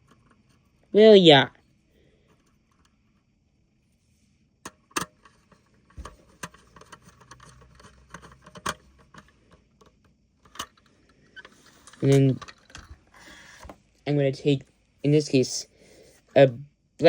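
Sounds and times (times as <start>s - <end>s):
small parts clicking and tapping: 4.6s - 13.7s.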